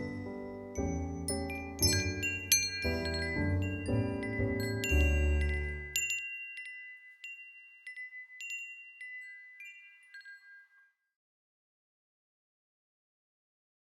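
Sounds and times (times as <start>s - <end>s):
bright chime notes: 0.0s - 10.8s.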